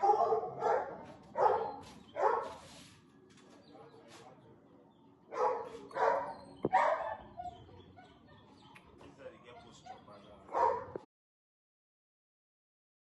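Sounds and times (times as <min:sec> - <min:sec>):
dog barking: 0:00.0 - 0:02.7, 0:05.3 - 0:08.6, 0:09.6 - 0:11.1.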